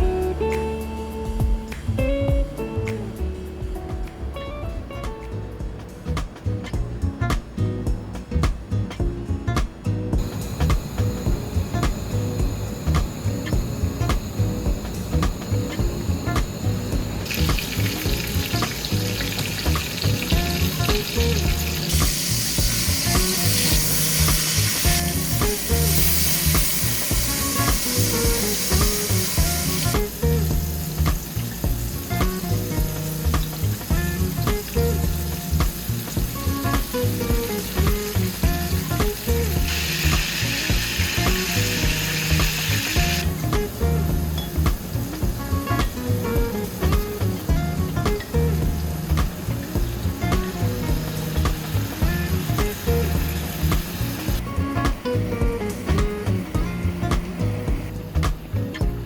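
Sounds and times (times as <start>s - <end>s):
background music: 0.0s - 59.0s
food sizzling in a frying pan: 10.2s - 54.4s.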